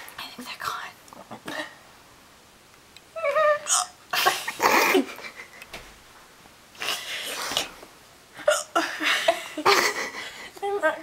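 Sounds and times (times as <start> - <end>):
person hiccuping: 3.6 - 5.0, 8.4 - 8.8.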